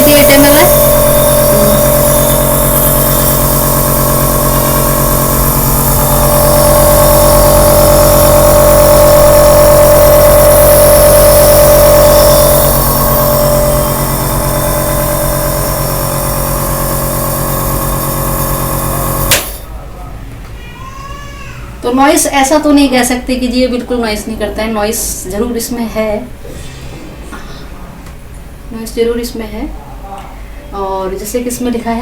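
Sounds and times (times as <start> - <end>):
nebulizer motor humming: 0.0 - 19.7.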